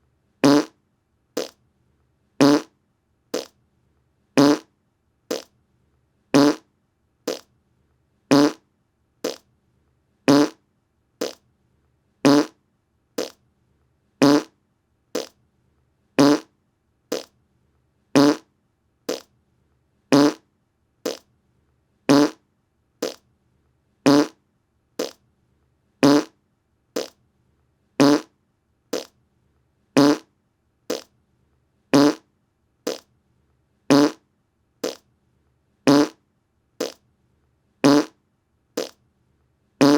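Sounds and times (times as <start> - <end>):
short buzzing fart sounds: 0.4 - 0.8, 1.4 - 1.6, 2.4 - 2.7, 3.3 - 3.6, 4.4 - 4.7, 5.3 - 5.5, 6.4 - 6.7, 7.3 - 7.5, 8.3 - 8.6, 9.2 - 9.5, 10.3 - 10.6, 11.2 - 11.4, 12.2 - 12.6, 13.2 - 13.4, 14.2 - 14.6, 15.2 - 15.4, 16.2 - 16.5, 17.1 - 17.4, 18.2 - 18.5, 19.1 - 19.3, 20.1 - 21.3, 22.1 - 22.4, 23.0 - 23.2, 24.1 - 24.4, 25.0 - 25.2, 26.0 - 26.4, 27.0 - 27.2, 28.0 - 29.2, 30.0 - 30.3, 30.9 - 31.1, 32.0 - 33.1, 33.9 - 34.2, 34.8 - 35.1, 35.9 - 36.2, 36.8 - 37.0, 37.8 - 38.2, 38.8 - 39.0.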